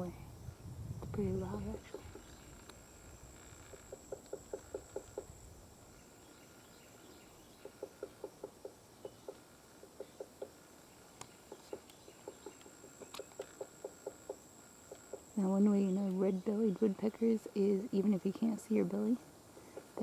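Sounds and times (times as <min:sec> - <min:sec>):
high insect buzz: 0:00.0 - 0:20.0
woodpecker pecking on tree: 0:01.8 - 0:05.3, 0:07.6 - 0:15.4, 0:19.5 - 0:20.0.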